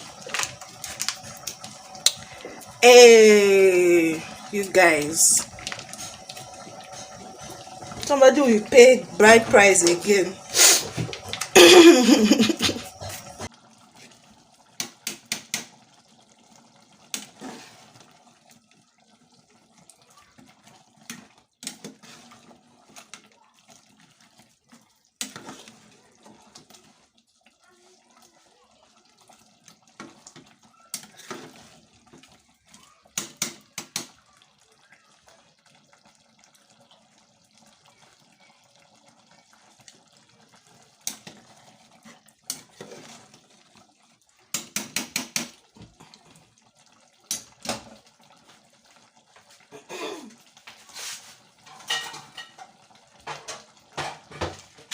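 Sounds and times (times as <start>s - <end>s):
pots and utensils clinking: 0.0s - 13.5s, 49.6s - 54.9s
water running from a tap: 0.0s - 54.9s.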